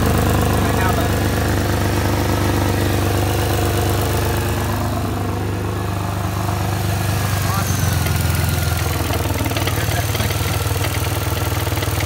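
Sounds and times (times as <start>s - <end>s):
car engine idling with clacking: 0.0s - 12.0s.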